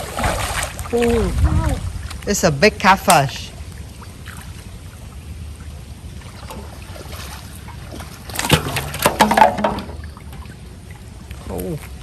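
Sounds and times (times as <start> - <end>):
fish splashing and knocking: 6.4 - 10.6.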